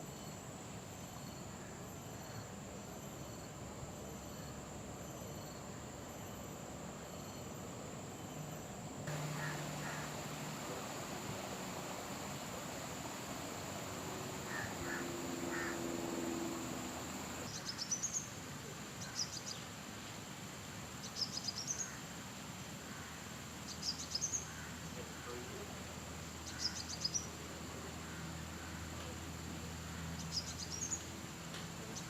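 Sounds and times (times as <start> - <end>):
outdoor background noise: 0.0 - 32.0
steady high whine: 9.1 - 17.5
bird chirping: 9.1 - 18.3.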